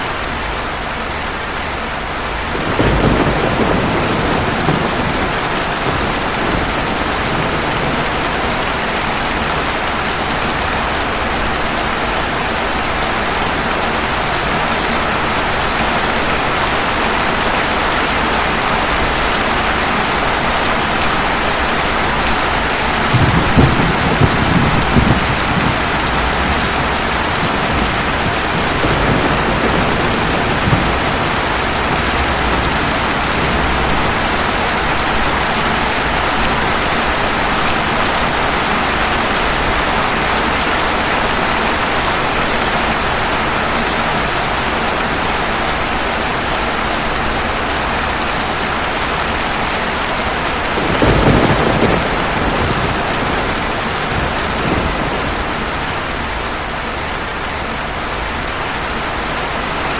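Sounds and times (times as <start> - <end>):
heavy rain: 0.0 - 59.9
thunder rumble: 2.5 - 10.5, 20.6 - 38.6, 50.3 - 57.6.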